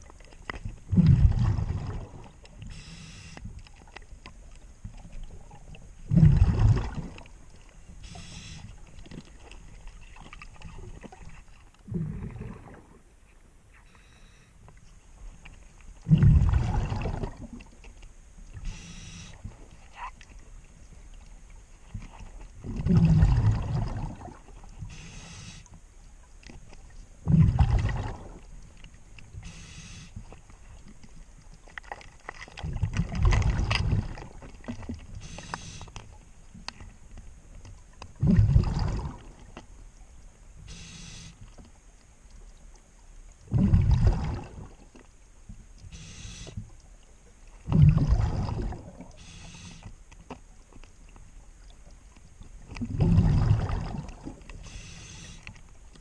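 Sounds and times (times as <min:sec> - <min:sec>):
inhale hiss: 0:02.6 - 0:03.5, 0:07.9 - 0:08.8, 0:13.7 - 0:14.7, 0:18.6 - 0:19.7, 0:24.8 - 0:25.8, 0:29.3 - 0:30.4, 0:35.1 - 0:36.2, 0:40.6 - 0:41.6, 0:45.9 - 0:46.7, 0:49.0 - 0:50.0, 0:54.5 - 0:55.6
diver exhaling through regulator: 0:02.7 - 0:03.4, 0:08.0 - 0:08.7, 0:18.6 - 0:19.4, 0:24.9 - 0:25.7, 0:29.4 - 0:30.2, 0:35.2 - 0:36.0, 0:40.6 - 0:41.4, 0:45.9 - 0:46.6, 0:47.7 - 0:49.9, 0:52.9 - 0:55.5.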